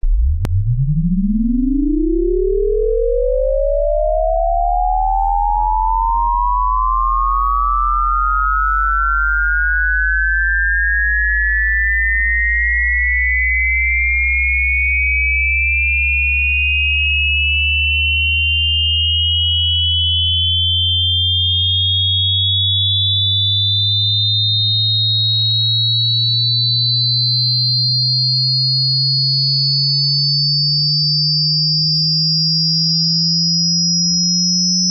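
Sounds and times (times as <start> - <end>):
faint low rising tone: 0.0 - 27.8
rising sine-wave tone: 0.0 - 34.9.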